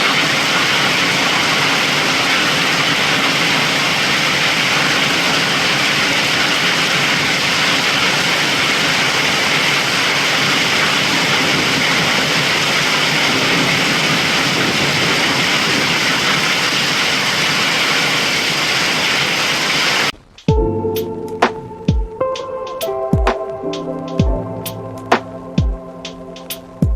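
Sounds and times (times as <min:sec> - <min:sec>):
heavy rain pouring: 0:00.0 - 0:22.5
music: 0:20.5 - 0:26.9.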